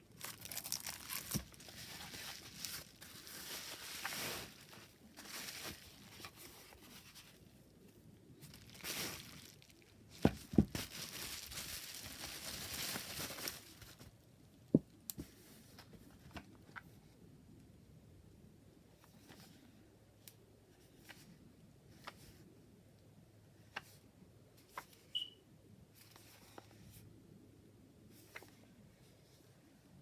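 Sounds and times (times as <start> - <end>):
packaging rustling and tearing: 0.0 - 7.5, 8.4 - 14.1.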